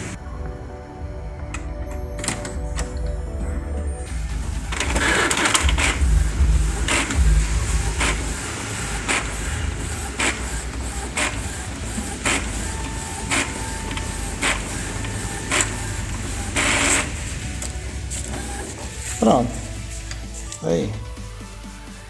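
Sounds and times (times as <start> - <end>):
printer mechanism clicks: 1.9 - 3.2, 4.0 - 20.3
inkjet printer running: 2.2 - 3.3, 3.9 - 22.0.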